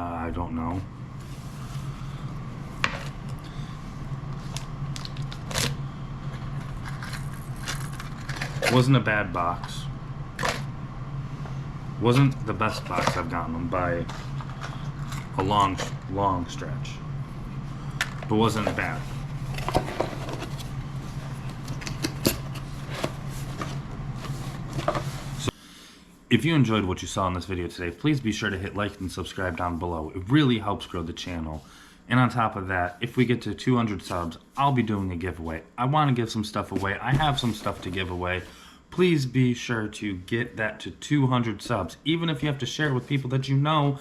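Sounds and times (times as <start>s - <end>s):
steady low hum: 0.0s - 44.0s
packaging clicks and scrapes: 6.4s - 8.8s
rustling of objects handled: 18.1s - 25.5s, 36.6s - 38.6s.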